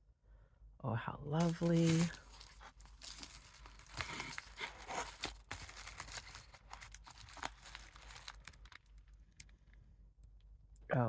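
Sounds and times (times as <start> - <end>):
paper rustling and crinkling: 1.4 - 9.5.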